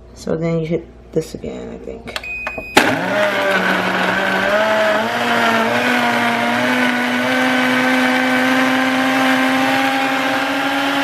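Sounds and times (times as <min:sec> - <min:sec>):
blender crushing ice: 0:02.8 - 0:11.0.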